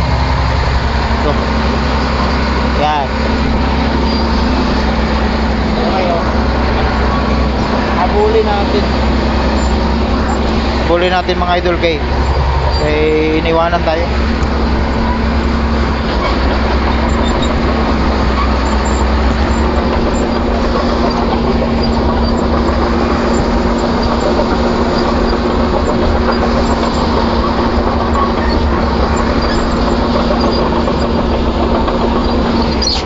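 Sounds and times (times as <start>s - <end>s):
excavator diesel engine rumbling: 0.0s - 33.0s.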